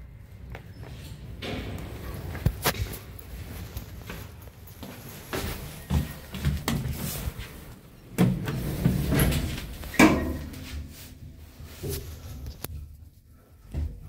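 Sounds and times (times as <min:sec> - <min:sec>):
lift clunking and rattling: 0:08.1 - 0:11.2.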